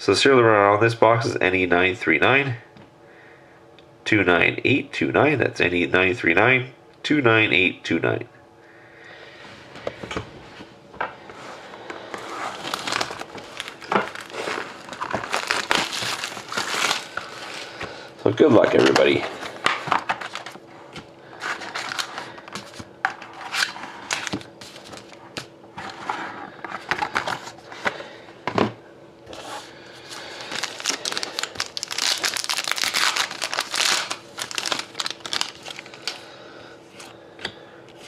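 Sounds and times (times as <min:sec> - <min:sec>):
plastic wrapping tearing and crinkling: 0:12.2 - 0:17.9, 0:19.1 - 0:20.6, 0:21.4 - 0:22.8, 0:30.0 - 0:36.2.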